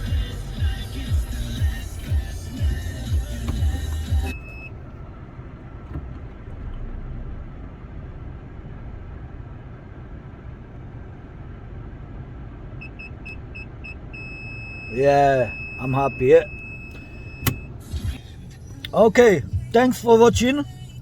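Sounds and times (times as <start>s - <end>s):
background music: 0.0s - 4.6s, 18.8s - 21.0s
car engine idling: 0.0s - 21.0s
reversing sensor beeps: 4.2s - 4.7s, 12.8s - 17.8s.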